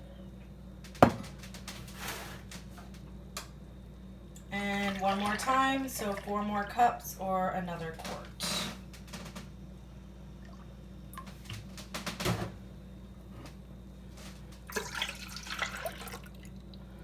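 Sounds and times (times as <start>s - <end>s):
liquid splashing: 4.6s - 6.8s, 14.6s - 16.6s
milk being poured into a pot: 14.7s - 16.6s.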